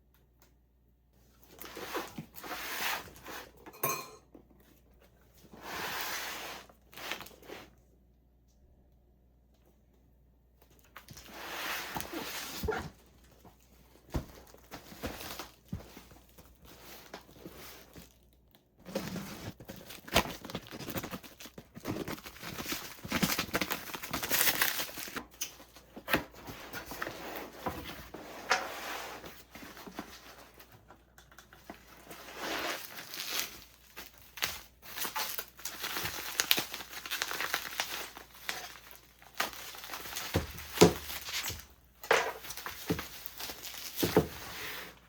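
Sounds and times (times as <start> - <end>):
packaging rustling and tearing: 18.9 - 27.2, 31.6 - 41.7, 42.3 - 44.8.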